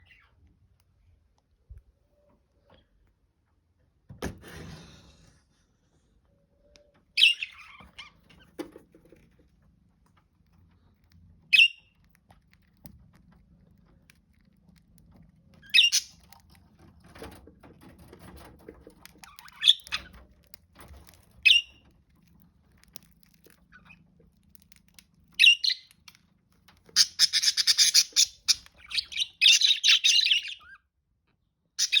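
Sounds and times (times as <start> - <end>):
parakeets chirping: 7.2 - 8.2, 11.5 - 11.9, 15.6 - 16.3, 19.2 - 20.2, 21.0 - 21.8, 25.3 - 26.1, 26.9 - 30.8, 31.8 - 32.0
parakeets rapid chattering: 27.0 - 30.6.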